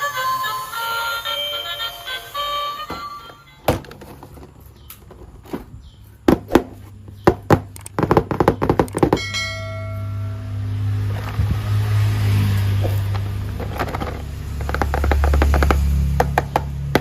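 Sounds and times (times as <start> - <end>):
plastic toy parts clicking: 7.7 - 9.2.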